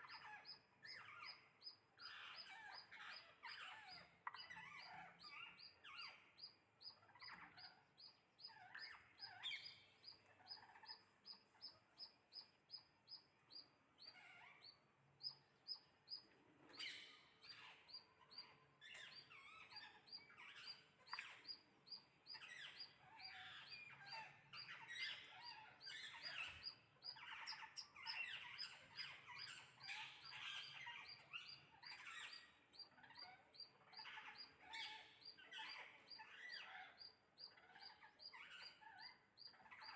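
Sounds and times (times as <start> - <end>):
birds chirping and calling: 0.0 - 39.9.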